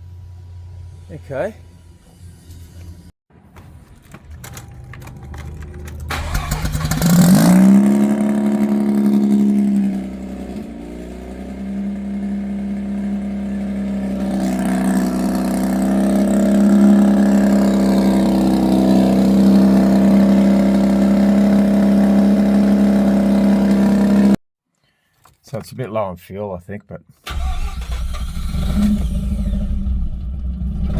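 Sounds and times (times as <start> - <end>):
rotary engine starting and revving: 3.6 - 24.4, 27.3 - 30.9.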